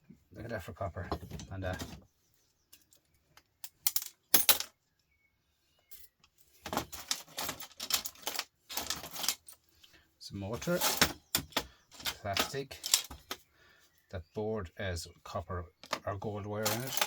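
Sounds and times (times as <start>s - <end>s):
scrap parts clicking and clattering: 2.7s - 4.8s, 5.9s - 13.5s, 15.8s - 17.0s.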